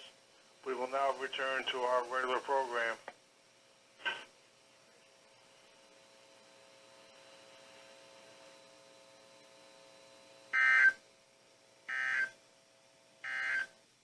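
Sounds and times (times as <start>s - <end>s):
faint steady hum: 0.0s - 14.0s
digital data tone bursts: 13.2s - 13.7s.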